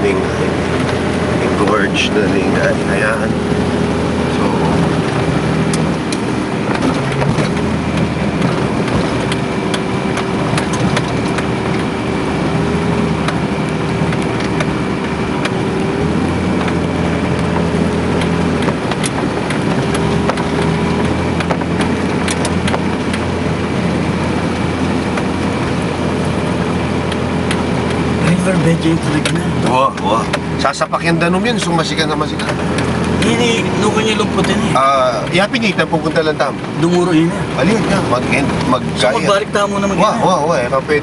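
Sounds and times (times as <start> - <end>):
vehicle engine running: 0.0 - 41.0
knocks and rattles: 4.8 - 12.0, 16.6 - 23.4.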